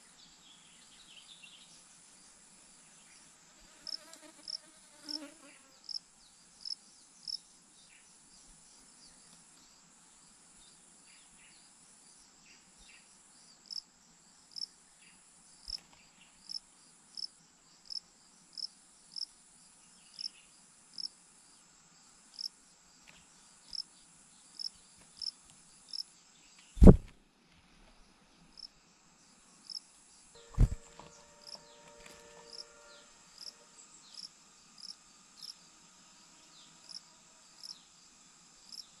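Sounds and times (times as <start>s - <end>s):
cricket chirping: 3.8s - 9.0s, 10.6s - 26.9s, 28.6s - 39.0s
high hiss: 30.4s - 37.0s.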